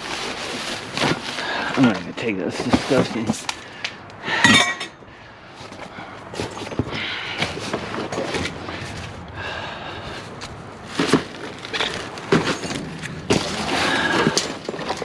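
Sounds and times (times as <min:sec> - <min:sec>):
scrap metal rattling and clattering: 0:05.6 - 0:15.0.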